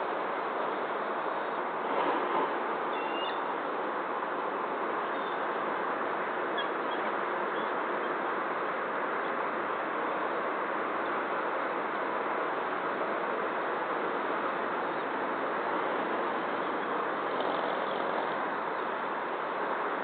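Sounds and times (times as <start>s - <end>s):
outdoor background hiss: 0.0s - 20.0s
faint short bird chirps: 2.9s - 3.4s.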